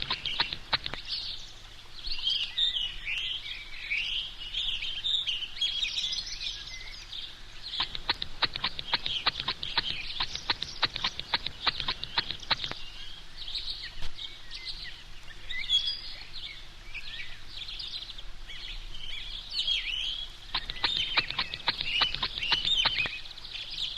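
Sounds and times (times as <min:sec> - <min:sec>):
squeaky chirping: 0:00.0 - 0:01.0, 0:07.8 - 0:12.8, 0:20.6 - 0:23.1.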